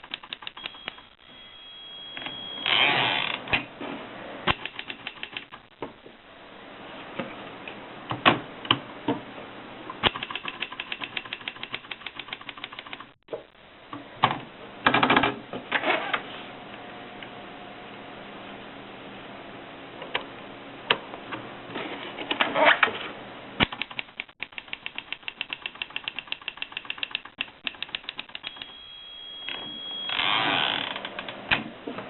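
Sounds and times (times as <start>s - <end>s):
manual typewriter clicking: 0.0s - 1.0s, 4.5s - 5.6s, 10.0s - 13.2s, 23.6s - 28.7s.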